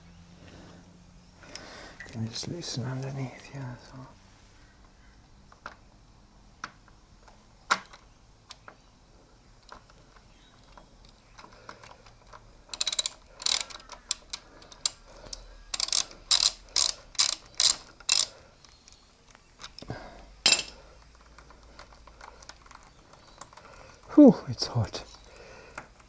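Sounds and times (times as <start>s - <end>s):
ratchet wrench clicking: 12.7s - 19.0s.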